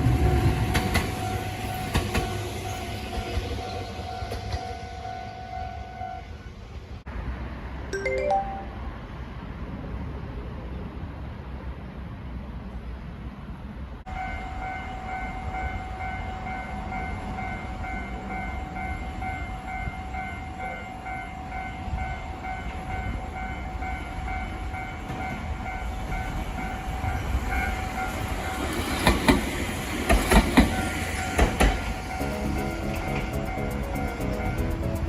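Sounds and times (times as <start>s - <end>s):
train wheels knocking on rails: 0.1s - 2.5s, 28.6s - 35.0s
level crossing bell ringing: 8.0s - 9.0s.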